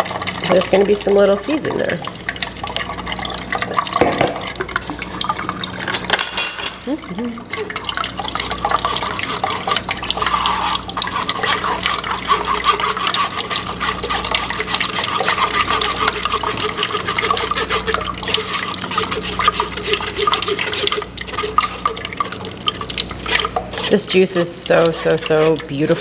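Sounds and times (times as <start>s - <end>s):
juice pouring through a strainer: 0.0s - 6.1s, 6.9s - 26.0s.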